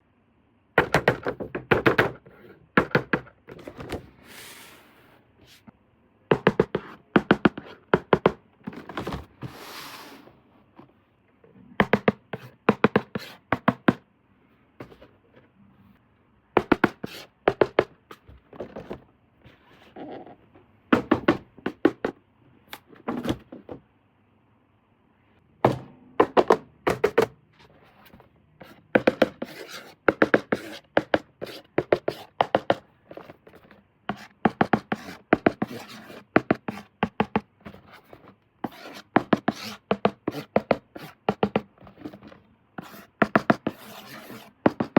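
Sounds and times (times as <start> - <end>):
taps on plastic and cardboard: 0.8 - 2.2, 2.8 - 4.0, 6.3 - 9.2, 11.8 - 14.0, 16.6 - 19.0, 20.9 - 22.2, 25.6 - 27.4, 28.6 - 44.9.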